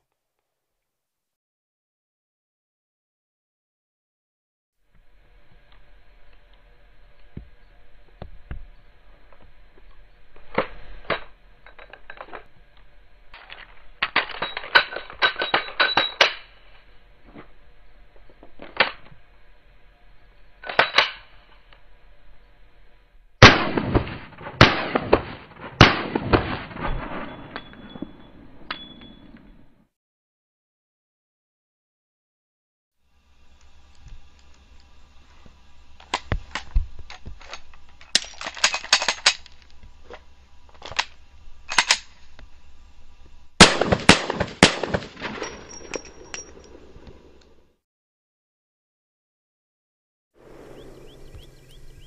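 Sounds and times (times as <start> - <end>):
loud pistol shots: 23.4 - 26.8, 43.6 - 45.4
quieter gunshot reports: 23.4 - 28.6, 43.6 - 45.8, 50.4 - 52.0
handgun metallic clicks and clatters: 36.0 - 42.2.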